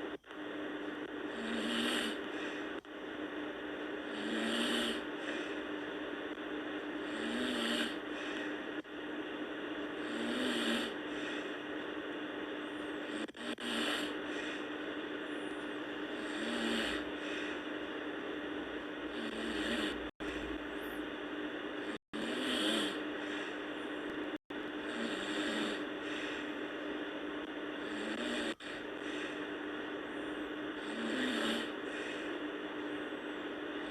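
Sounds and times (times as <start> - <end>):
steady low hum: 0.0 - 33.9
girl snoring: 1.2 - 2.8, 4.0 - 5.6, 7.0 - 8.4, 10.0 - 11.5, 13.0 - 14.6, 16.1 - 17.5, 19.1 - 20.5, 21.8 - 23.5, 24.8 - 26.5, 27.7 - 29.4, 30.7 - 32.4.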